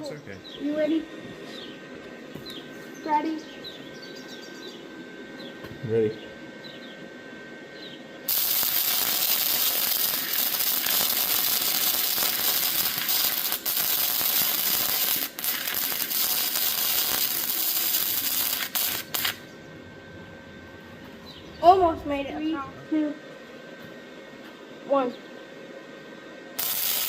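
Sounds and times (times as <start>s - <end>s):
welding arc crackling: 8.3s - 19.4s, 26.6s - 27.0s.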